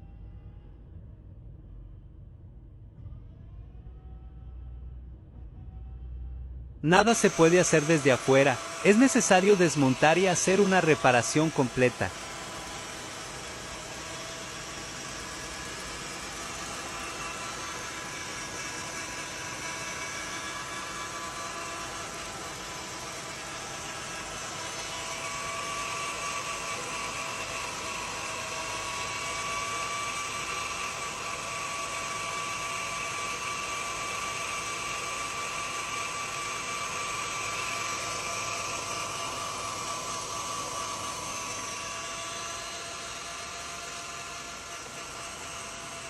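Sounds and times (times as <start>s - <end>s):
transmission whine: 0.0s - 25.4s.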